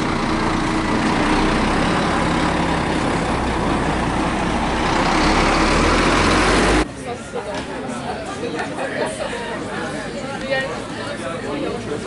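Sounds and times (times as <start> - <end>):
road noise rushing: 0.0 - 7.1
vehicle engine rumble: 0.0 - 7.9.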